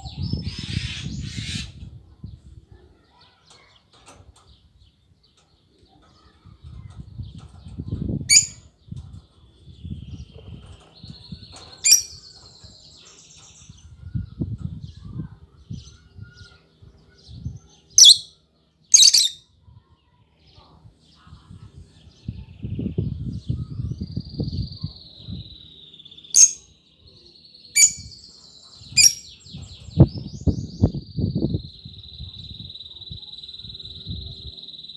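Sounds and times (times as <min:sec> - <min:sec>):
bird twittering: 0:08.3 - 0:08.6, 0:11.8 - 0:12.2, 0:18.0 - 0:18.3, 0:19.0 - 0:19.4, 0:26.2 - 0:26.7, 0:27.8 - 0:28.2, 0:28.9 - 0:29.4
bird shrill chirps: 0:08.3 - 0:08.7, 0:11.8 - 0:12.4, 0:18.0 - 0:18.3, 0:18.9 - 0:19.4, 0:25.6 - 0:26.8, 0:27.8 - 0:29.5.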